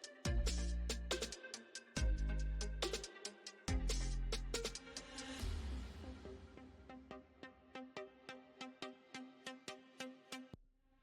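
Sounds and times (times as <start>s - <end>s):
plucked synth electronic music: 0.0s - 5.3s.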